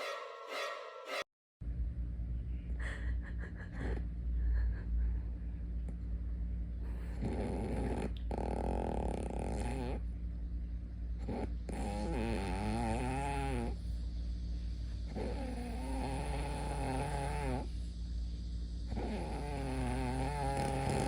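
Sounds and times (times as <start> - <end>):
person snoring: 7.1 - 10.0, 11.3 - 13.8, 15.1 - 17.7, 18.9 - 21.0.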